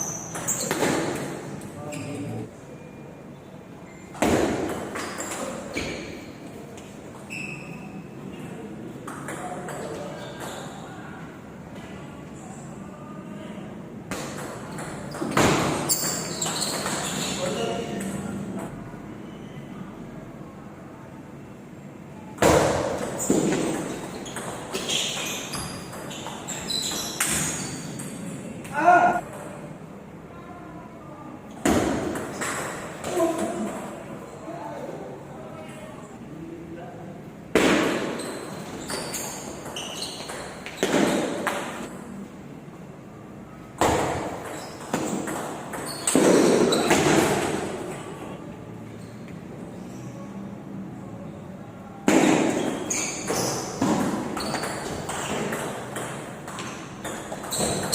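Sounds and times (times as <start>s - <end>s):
table tennis ball bouncing: 14.1s - 17.1s, 22.4s - 29.7s, 31.7s - 34.0s, 43.8s - 48.0s, 52.3s - 57.9s
table tennis ball pinging: 43.8s - 47.6s, 52.6s - 57.9s.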